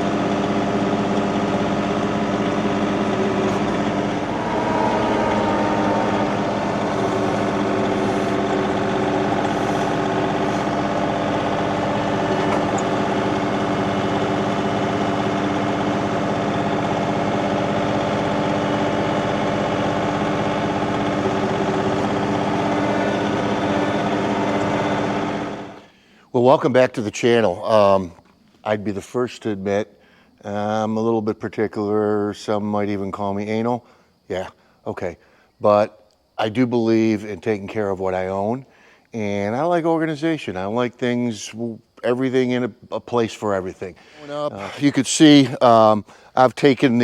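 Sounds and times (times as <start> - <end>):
tractor engine running: 0.0 - 26.0.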